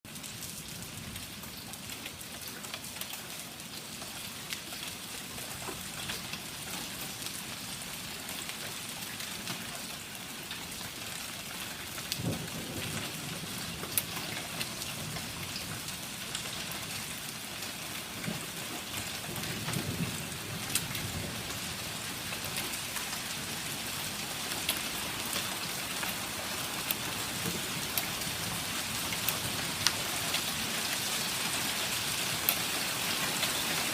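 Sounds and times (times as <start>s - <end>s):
hail and rain pelting: 0.1s - 33.9s
hailstones ticking on hard surfaces: 11.4s - 33.9s.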